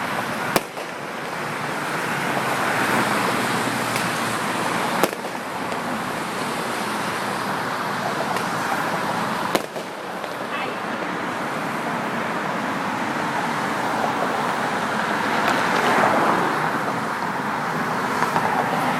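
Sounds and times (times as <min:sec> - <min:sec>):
city traffic noise: 0:00.0 - 0:18.9
firework bang: 0:00.4 - 0:02.2, 0:02.9 - 0:07.1, 0:08.3 - 0:10.8.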